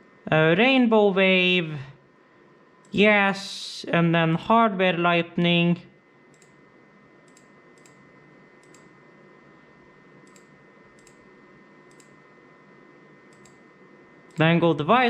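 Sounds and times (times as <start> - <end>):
faint electrical whine: 0.0 - 15.0
computer mouse clicks: 6.3 - 6.6, 7.2 - 9.0, 10.2 - 11.3, 11.9 - 12.2, 13.3 - 13.7.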